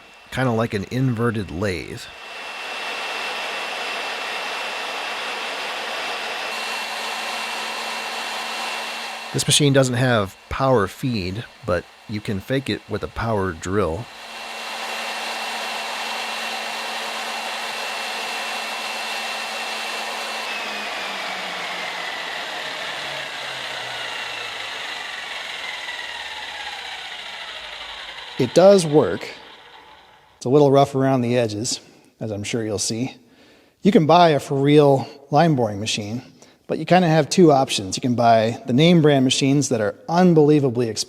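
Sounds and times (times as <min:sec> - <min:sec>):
low hum: 0:00.0 - 0:30.4
electric drill motor whining: 0:00.0 - 0:30.5.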